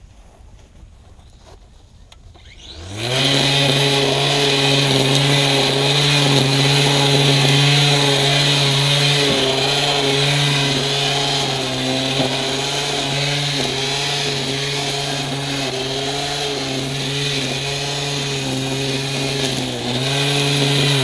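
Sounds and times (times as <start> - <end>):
string trimmer motor whining: 2.1 - 21.0.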